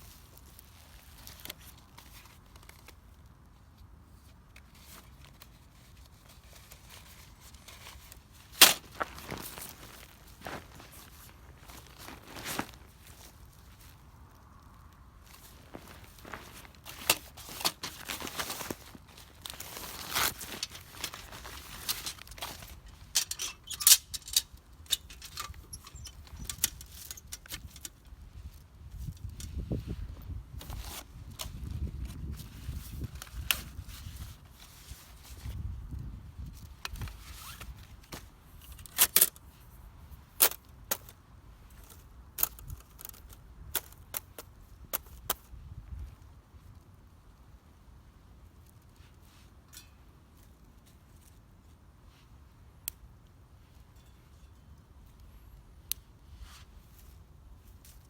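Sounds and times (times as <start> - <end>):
dry wood snapping and crackling: 7.4 - 28.1, 41.8 - 45.4.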